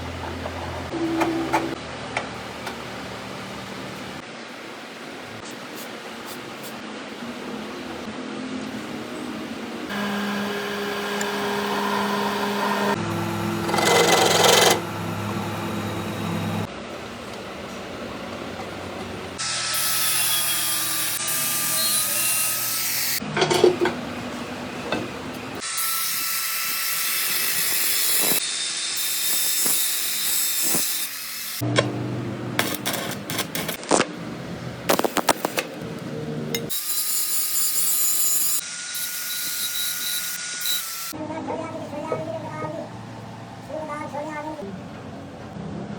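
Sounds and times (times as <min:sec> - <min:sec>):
power tool cutting metal: 0:08.8 - 0:23.3, 0:25.4 - 0:31.7, 0:32.6 - 0:34.0, 0:36.5 - 0:41.2.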